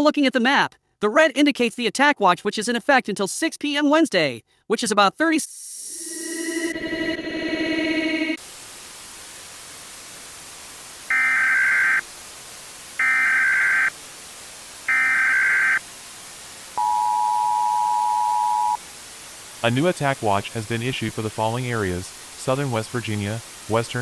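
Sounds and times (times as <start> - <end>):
short data tones: 5.7 - 8.4, 14.9 - 15.8, 16.8 - 18.8
faint hiss: 8.4 - 24.0
two-tone attention signal: 16.8 - 18.8.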